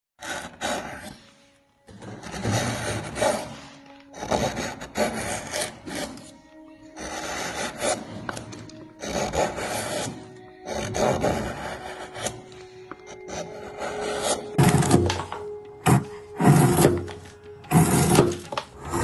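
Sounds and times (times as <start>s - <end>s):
chisel scraping wood: 0.2s - 19.0s
soft sustained musical notes: 10.2s - 19.0s.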